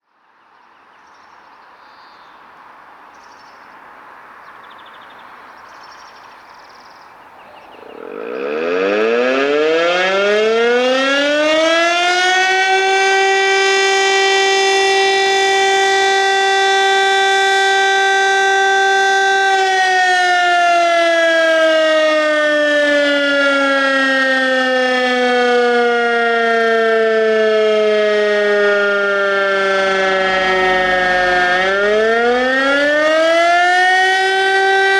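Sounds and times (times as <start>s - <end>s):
wailing fire alarm siren: 7.6s - 34.9s.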